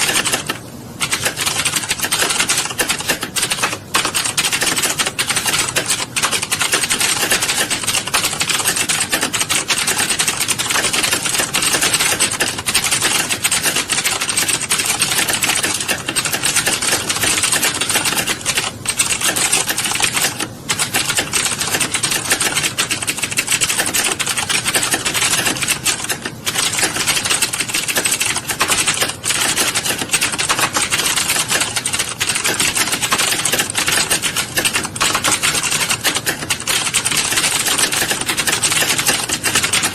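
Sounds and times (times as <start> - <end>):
rapid keyboard typing: 0.0 - 39.9.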